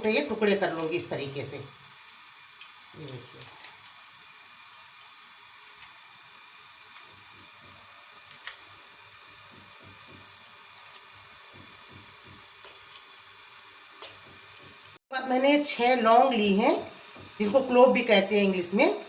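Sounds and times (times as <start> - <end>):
steady hiss: 0.0 - 19.0
dried leaves crumbling clicks: 3.4 - 4.0, 8.3 - 8.6.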